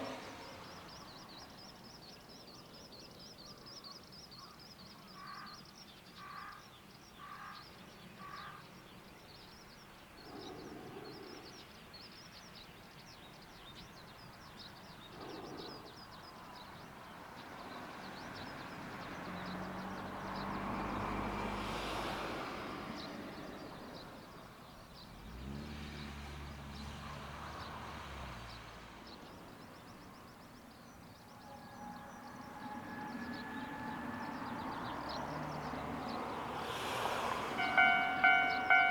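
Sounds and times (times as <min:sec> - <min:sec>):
diesel railcar passing: 0:00.0 - 0:02.4, 0:16.6 - 0:38.9
small birds chirping: 0:00.0 - 0:21.6, 0:22.5 - 0:38.9
crow cawing: 0:05.2 - 0:05.6, 0:06.2 - 0:06.6, 0:07.2 - 0:07.6.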